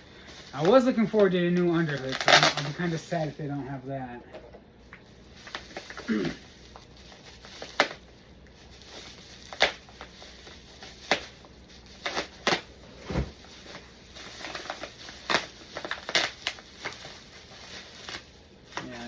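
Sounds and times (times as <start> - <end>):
packaging rustling and crinkling: 0.0 - 3.8, 4.8 - 19.0
dull thump: 13.0 - 13.4.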